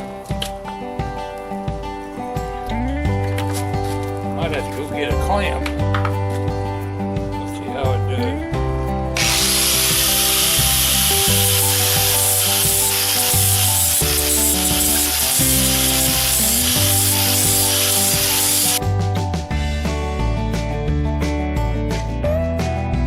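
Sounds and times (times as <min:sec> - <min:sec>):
guitar music: 0:00.0 - 0:23.0
angle grinder sanding wood: 0:09.2 - 0:18.8.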